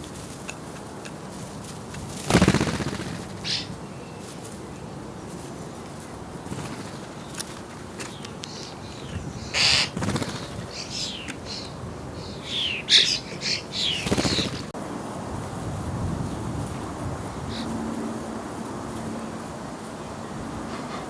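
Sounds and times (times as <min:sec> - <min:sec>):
starling chicks begging calls: 0:02.3 - 0:03.9, 0:08.2 - 0:14.8, 0:17.3 - 0:17.8.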